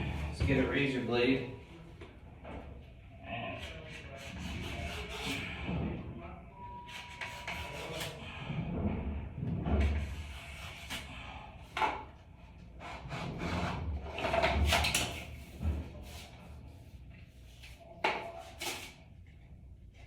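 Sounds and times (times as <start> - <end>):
razor blade scraping plastic: 7.0 - 8.2.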